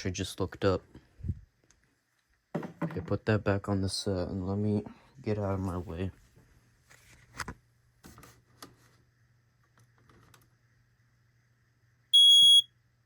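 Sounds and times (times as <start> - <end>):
smoke alarm beep: 12.2 - 12.7.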